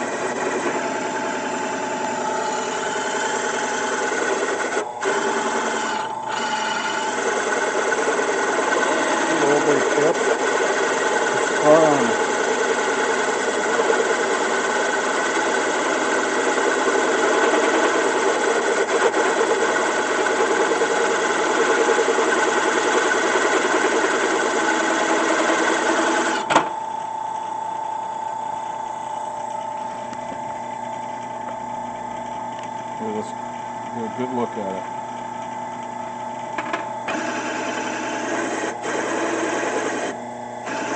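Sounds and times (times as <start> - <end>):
drill press running: 0.0 - 40.9.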